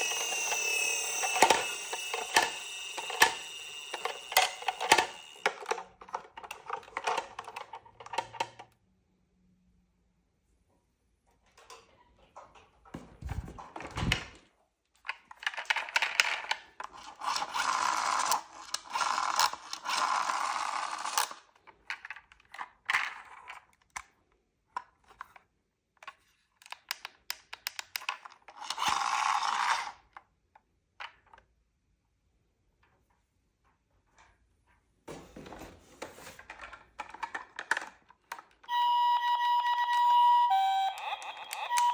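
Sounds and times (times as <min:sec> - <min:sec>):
plastic toy cars clicking: 0:00.0 - 0:08.8, 0:15.0 - 0:31.6, 0:36.4 - 0:41.9
toy cars scraping: 0:16.8 - 0:21.4, 0:28.6 - 0:30.0.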